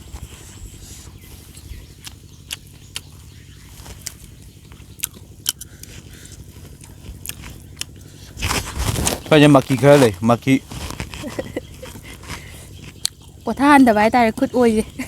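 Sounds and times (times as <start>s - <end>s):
sharp crunchy clicks: 1.8s - 13.5s
person chewing and biting food: 1.9s - 9.0s, 10.9s - 13.4s.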